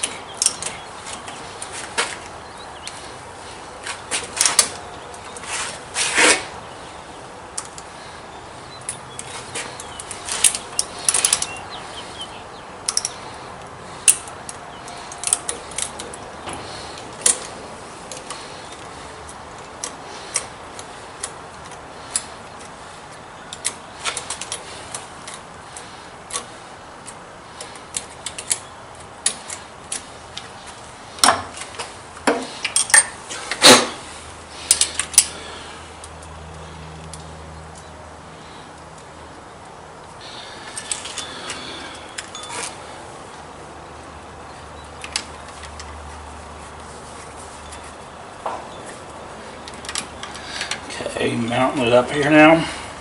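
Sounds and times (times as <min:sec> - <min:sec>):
clinking of hand tools and metal parts: 0:00.0 - 0:03.1, 0:08.8 - 0:11.7, 0:12.8 - 0:13.4, 0:14.0 - 0:22.8, 0:23.5 - 0:37.9, 0:40.2 - 0:43.0, 0:47.1 - 0:52.9.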